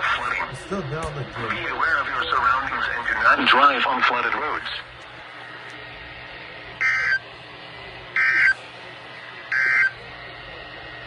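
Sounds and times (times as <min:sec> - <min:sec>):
radio hiss: 0:00.0 - 0:05.0
warbling digital data tone: 0:08.2 - 0:08.6.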